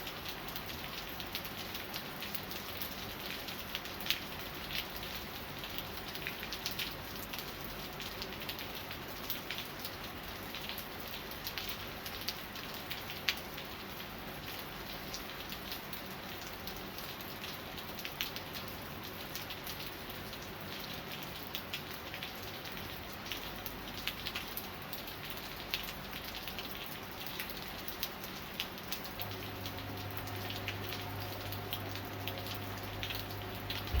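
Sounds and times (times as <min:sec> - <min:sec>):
rain falling: 0:00.0 - 0:34.0
raindrops tapping: 0:27.9 - 0:34.0
low steady hum: 0:29.1 - 0:34.0.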